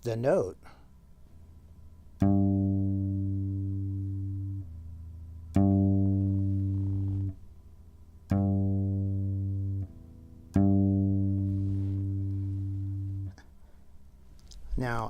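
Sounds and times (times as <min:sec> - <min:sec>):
guitar hammer-on notes: 0:01.4 - 0:13.4.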